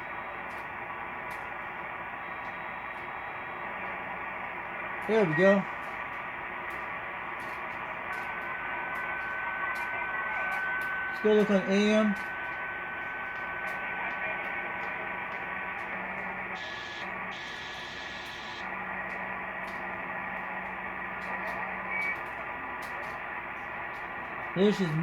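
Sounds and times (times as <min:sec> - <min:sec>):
faint low hum: 0:00.0 - 0:25.0
radio static hiss: 0:00.0 - 0:25.0
thin steady whistle: 0:08.0 - 0:18.7.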